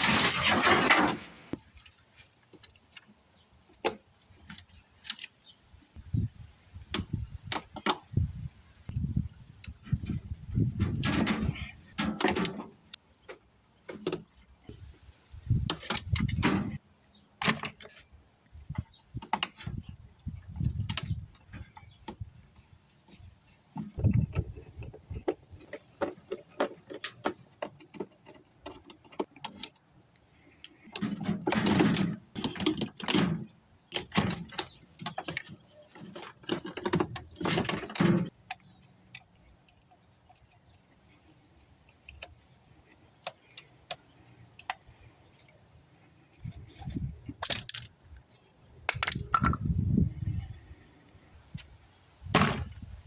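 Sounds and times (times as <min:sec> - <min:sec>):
metal parts clanking and rattling: 0:09.9 - 0:12.8, 0:30.8 - 0:38.4, 0:46.4 - 0:48.0.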